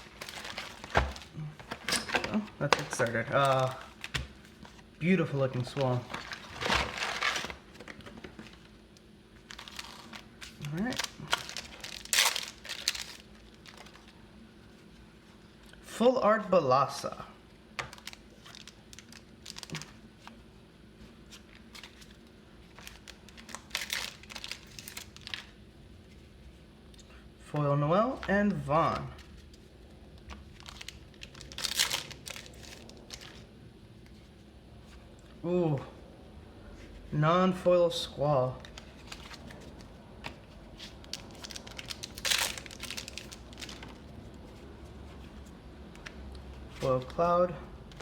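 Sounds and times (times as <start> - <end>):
foil wrapper crinkling: 0.0 - 1.8, 2.6 - 4.8, 5.6 - 8.7, 9.4 - 14.1, 17.8 - 20.3, 21.4 - 25.6, 28.9 - 33.4, 38.6 - 44.4.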